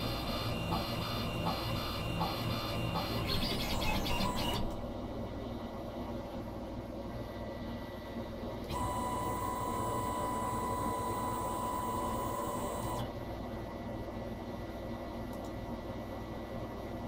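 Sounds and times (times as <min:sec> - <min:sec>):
cnc machine motors whining: 0:00.0 - 0:04.8, 0:08.7 - 0:13.1.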